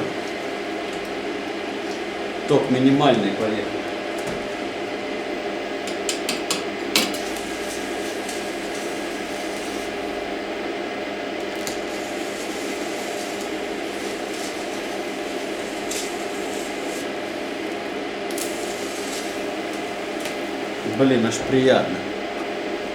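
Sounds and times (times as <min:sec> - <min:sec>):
welding arc crackle: 0:05.6 - 0:22.9.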